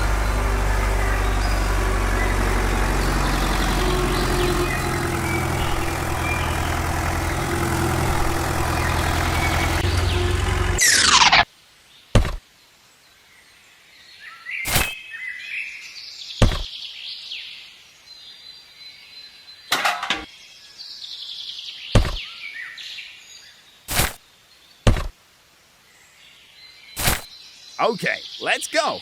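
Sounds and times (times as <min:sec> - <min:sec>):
birds chirping: 0:00.0 - 0:11.4, 0:21.8 - 0:22.7, 0:26.9 - 0:29.0
sharp knocks: 0:12.2 - 0:12.4, 0:16.4 - 0:16.7, 0:22.0 - 0:22.2, 0:24.9 - 0:25.1.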